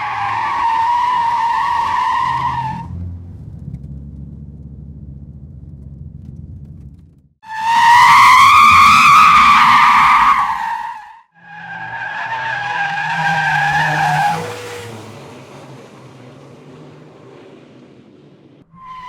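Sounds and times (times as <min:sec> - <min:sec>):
car tyres screeching: 0:00.0 - 0:04.2, 0:07.4 - 0:19.0
low engine rumble: 0:02.6 - 0:07.4.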